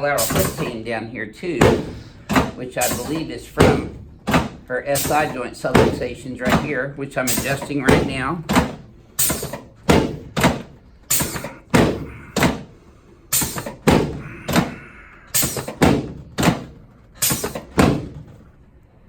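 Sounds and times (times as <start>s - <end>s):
sharp thumps of chiropractic thrusts: 0.0s - 0.8s, 1.6s - 18.5s.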